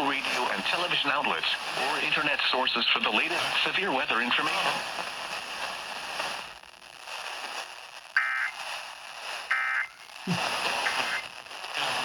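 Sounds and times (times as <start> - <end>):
radio hiss and static: 0.0 - 12.0
screeching digital data bursts: 8.2 - 8.6.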